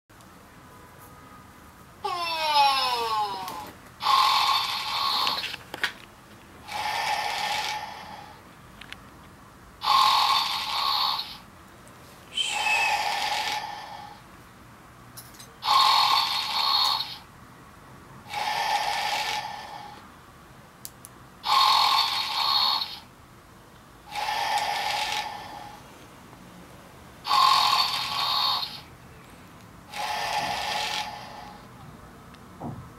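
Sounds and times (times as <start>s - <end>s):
toy dog recorded snoring: 3.4s - 5.6s, 6.7s - 8.4s, 9.8s - 11.4s, 12.4s - 14.2s, 15.6s - 17.2s, 18.3s - 20.0s, 21.4s - 23.1s, 24.1s - 25.8s, 27.2s - 28.9s, 29.9s - 31.7s.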